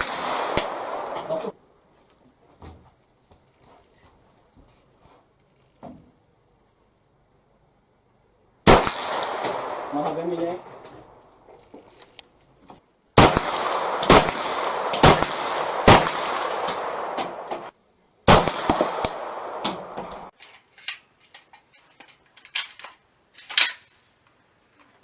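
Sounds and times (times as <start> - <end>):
rifle shots: 0.0 - 1.5, 8.7 - 11.2, 13.2 - 17.7, 18.3 - 20.3.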